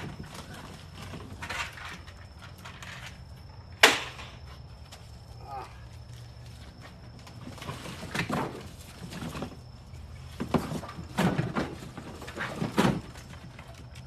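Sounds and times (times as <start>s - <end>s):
objects knocking being set down: 7.6s - 9.6s, 10.3s - 13.5s.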